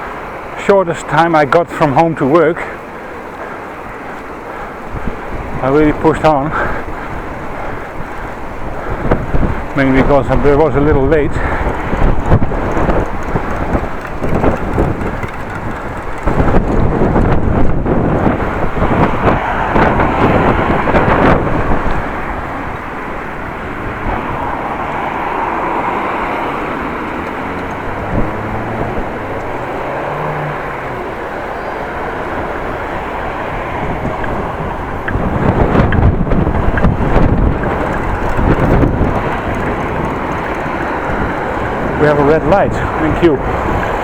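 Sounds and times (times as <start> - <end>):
passing traffic engine hum: 0.0 - 44.0
wind buffeting microphone: 0.0 - 44.0.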